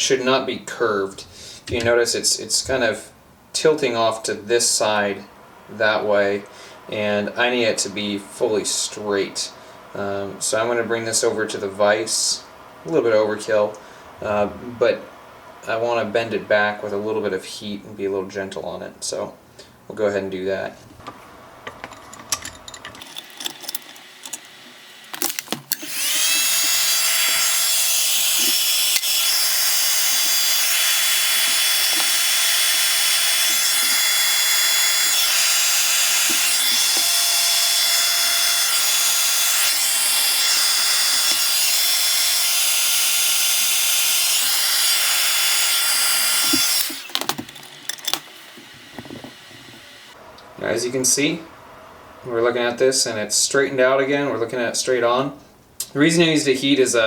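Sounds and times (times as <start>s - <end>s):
heat gun blowing: 23.0s - 50.2s.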